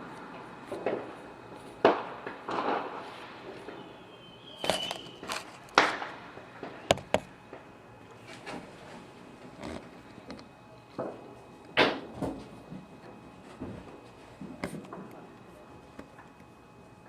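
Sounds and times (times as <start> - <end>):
fireworks bangs and cracks: 0.0 - 7.7
high firework whistle: 1.9 - 7.1.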